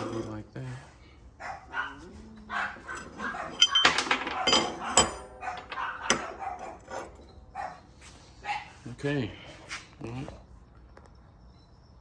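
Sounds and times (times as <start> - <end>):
steel parts clinking and clattering: 0.0 - 0.4, 2.8 - 7.4.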